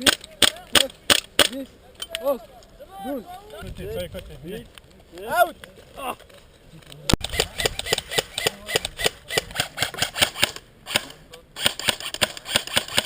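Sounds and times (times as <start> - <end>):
airsoft guns firing: 0.0 - 1.6, 7.2 - 13.0.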